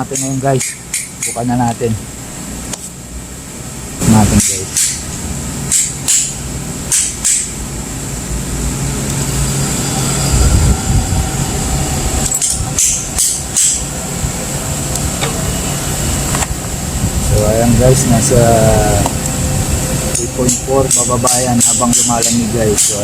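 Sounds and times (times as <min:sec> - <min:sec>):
refrigeration compressor humming: 0:00.0 - 0:23.0.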